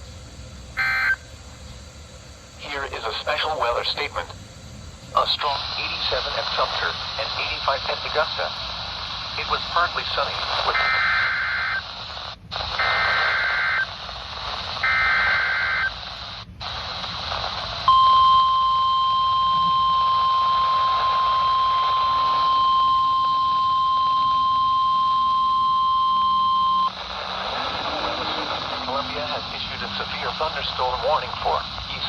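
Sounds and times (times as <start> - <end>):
radio hiss: 0.0 - 32.0
screeching digital header tones: 0.8 - 1.2, 9.4 - 12.1, 12.7 - 16.0, 17.8 - 31.7.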